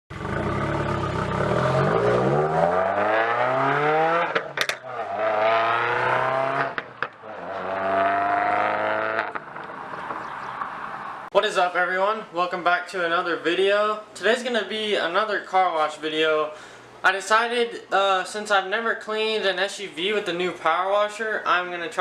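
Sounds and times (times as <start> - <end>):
car engine accelerating hard: 0.1 - 9.4.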